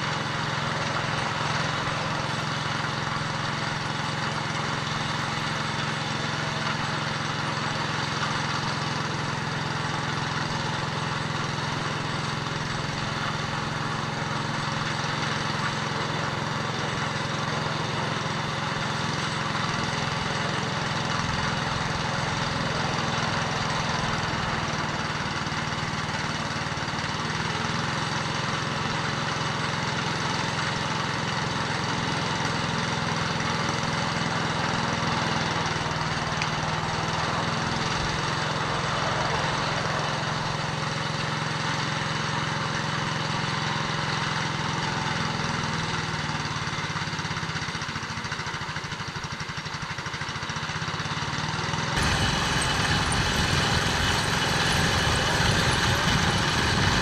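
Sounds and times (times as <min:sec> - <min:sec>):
engine running: 0:00.0 - 0:57.0.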